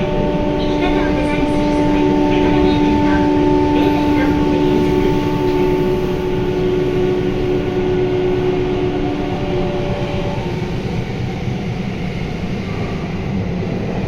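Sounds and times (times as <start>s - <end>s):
traction motor whining: 0.0s - 11.2s
train wheels rumbling: 0.0s - 14.0s.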